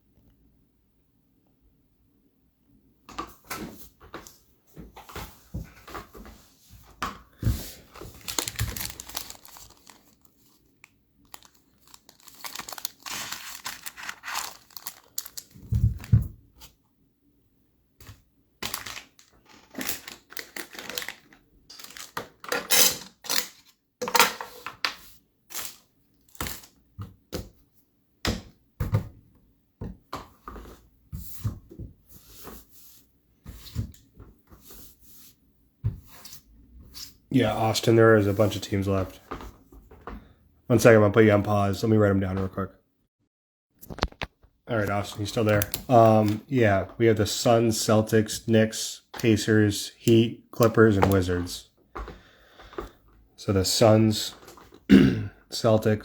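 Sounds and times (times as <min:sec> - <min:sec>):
plastic packaging crinkling and tearing: 0:07.7 - 0:16.1, 0:18.6 - 0:23.7, 0:25.5 - 0:26.8, 0:43.8 - 0:44.3, 0:45.0 - 0:46.6.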